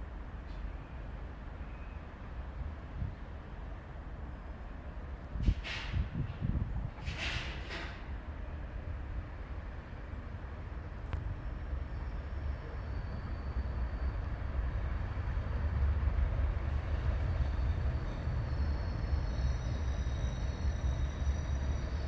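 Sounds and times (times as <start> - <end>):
diesel locomotive engine rumble: 0.0 - 22.0.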